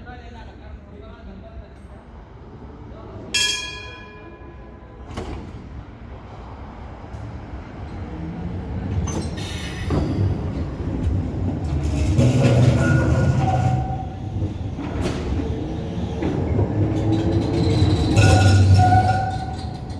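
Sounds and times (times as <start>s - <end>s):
tram running gear rumbling: 2.2s - 19.9s
steel wheels clacking over rail joints: 8.9s - 19.9s.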